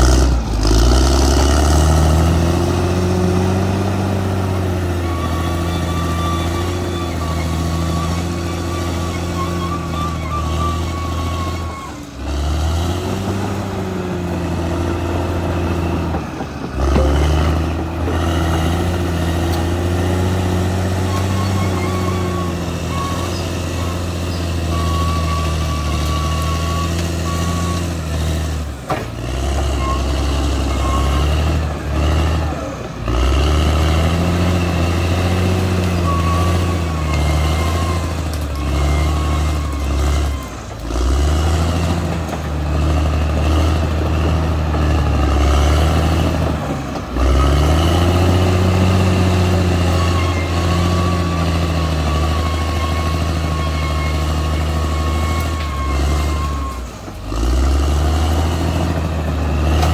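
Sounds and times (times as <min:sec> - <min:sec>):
bulldozer diesel engine under load: 0:00.0 - 0:59.9.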